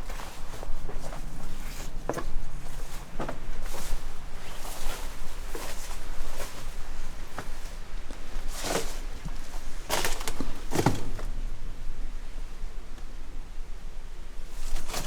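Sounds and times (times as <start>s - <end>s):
footsteps crunching on rough ground: 0.0s - 11.3s.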